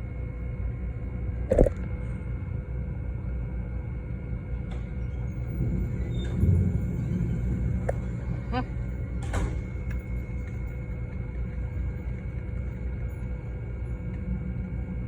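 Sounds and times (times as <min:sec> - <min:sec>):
steady room hum: 0:00.0 - 0:15.0
distant thunder rumble: 0:05.4 - 0:09.9.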